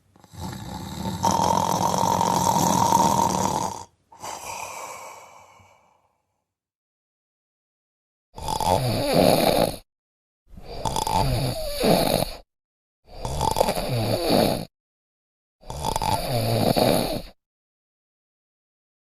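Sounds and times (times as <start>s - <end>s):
person snoring: 0.1s - 6.4s, 8.4s - 9.9s, 10.6s - 12.5s, 13.1s - 14.7s, 15.6s - 17.4s.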